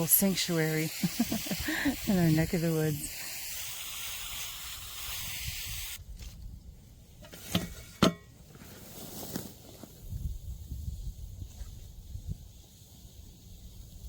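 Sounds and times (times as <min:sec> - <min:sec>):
water spraying hiss: 0:00.0 - 0:06.0, 0:10.5 - 0:14.0.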